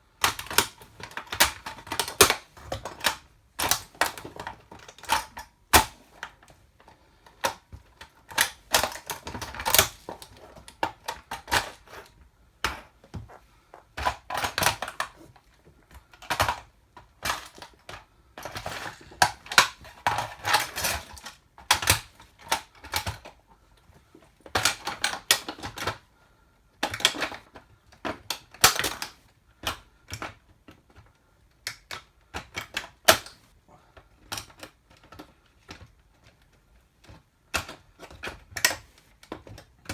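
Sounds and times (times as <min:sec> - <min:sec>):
toy car cracking under heels: 0:00.2 - 0:06.4, 0:07.4 - 0:12.1.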